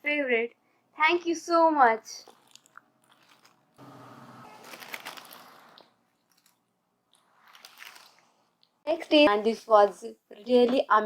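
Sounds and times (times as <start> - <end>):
wrapping crinkling: 2.2 - 3.8, 4.4 - 8.8
packaging rustle: 3.0 - 3.6, 4.4 - 8.4.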